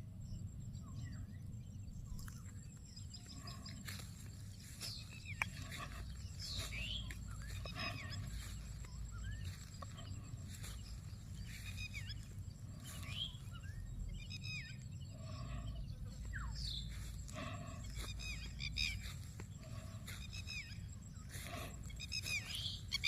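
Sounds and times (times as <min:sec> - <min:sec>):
birds chirping: 0:00.0 - 0:23.0
steady low rumble: 0:00.0 - 0:23.0.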